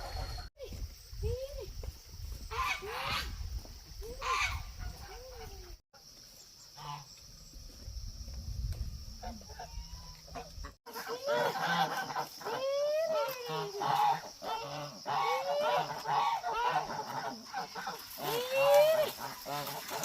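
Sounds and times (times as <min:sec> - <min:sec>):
poultry calling: 0:02.5 - 0:03.4, 0:04.2 - 0:05.6, 0:06.8 - 0:07.2, 0:09.2 - 0:20.0.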